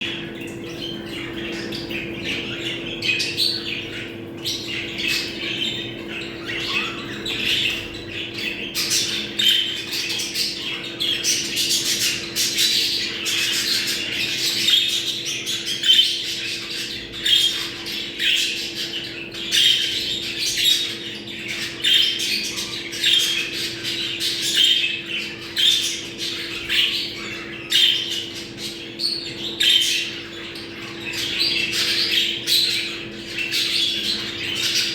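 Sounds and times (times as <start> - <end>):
budgerigars chattering: 0.0 - 34.9.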